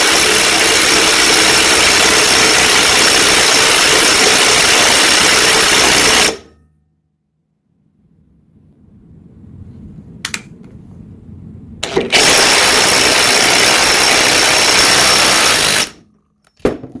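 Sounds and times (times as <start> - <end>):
impact driver hammering: 0.0 - 6.5, 11.8 - 16.0.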